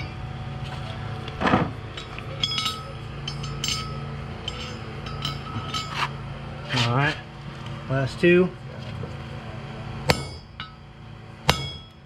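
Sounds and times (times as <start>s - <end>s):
steady hum: 0.0s - 12.0s
metal clinks and taps: 1.9s - 6.1s
metal scrape: 4.5s - 7.2s.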